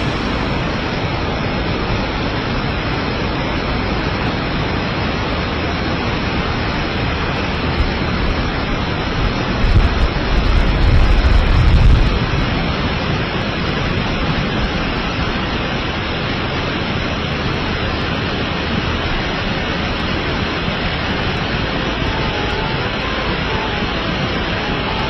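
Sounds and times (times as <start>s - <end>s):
low rumble: 0.0s - 3.9s, 6.2s - 15.8s
heavy rain hissing: 0.0s - 25.0s.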